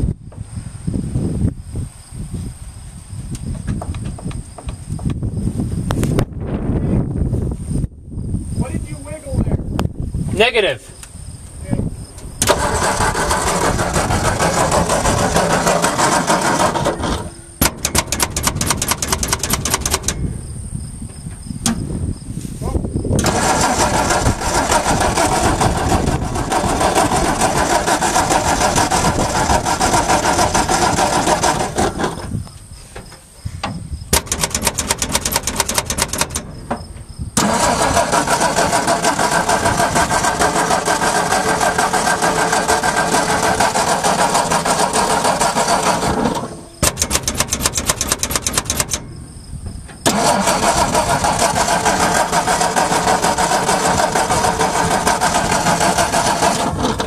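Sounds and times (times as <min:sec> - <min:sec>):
engine cranking by starter: 0:12.2 - 0:20.4, 0:23.2 - 0:32.4, 0:34.1 - 0:57.0
fast starter clicking: 0:12.4 - 0:20.2, 0:23.2 - 0:32.4, 0:34.1 - 0:49.1, 0:50.0 - 0:57.0.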